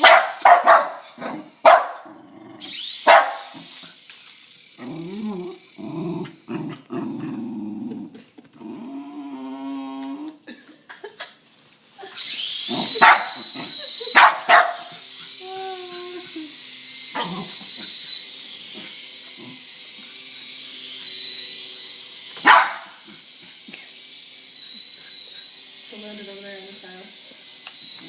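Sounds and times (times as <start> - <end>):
dog barking: 0.0 - 2.0, 3.1 - 3.6, 13.0 - 13.4, 14.2 - 14.9, 22.4 - 23.0
small motor whine: 0.0 - 28.0
dog yelping: 3.0 - 3.6, 12.9 - 15.0, 22.4 - 23.0.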